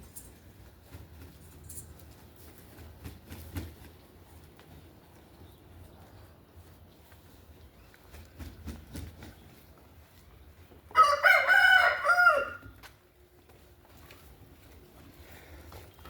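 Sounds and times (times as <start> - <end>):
rooster crowing: 10.9 - 12.7.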